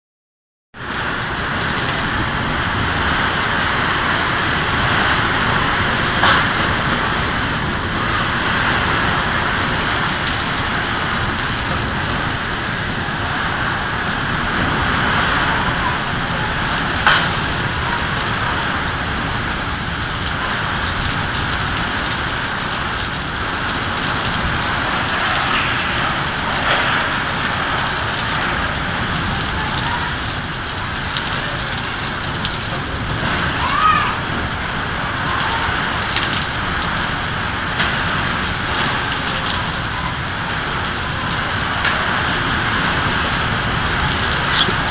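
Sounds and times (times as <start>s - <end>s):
steady rain hiss: 0.8s - 44.9s.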